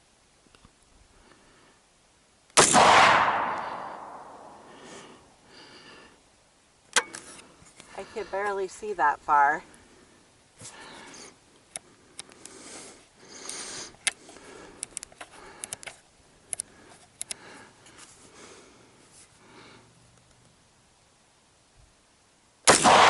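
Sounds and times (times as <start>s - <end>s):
soft breathing: 1.0s - 2.0s, 3.6s - 6.4s, 7.2s - 8.9s, 9.6s - 20.0s.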